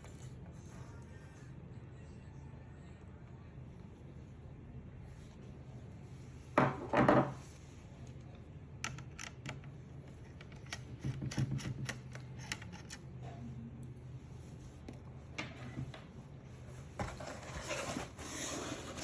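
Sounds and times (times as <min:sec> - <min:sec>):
steady low hum: 0:00.0 - 0:19.0
clattering scrape: 0:17.0 - 0:19.0.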